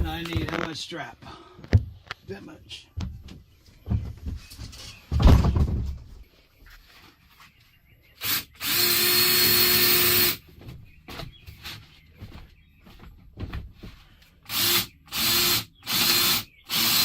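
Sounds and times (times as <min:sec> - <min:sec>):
power drill whining: 0:08.2 - 0:10.4, 0:14.4 - 0:17.0.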